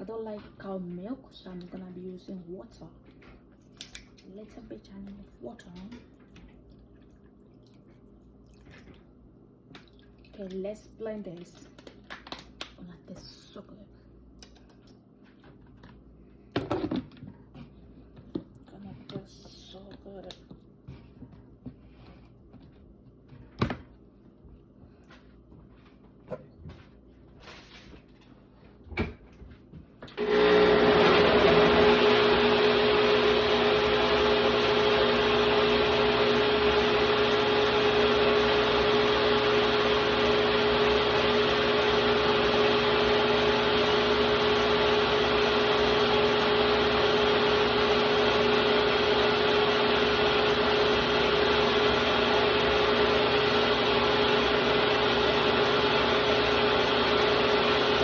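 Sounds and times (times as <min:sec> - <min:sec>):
electric blender running: 0:30.2 - 0:58.0.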